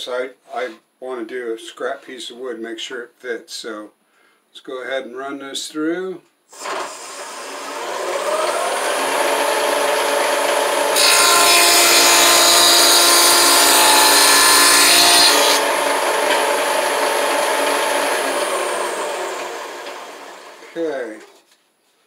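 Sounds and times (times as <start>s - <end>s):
blade cutting through board: 6.6s - 20.4s.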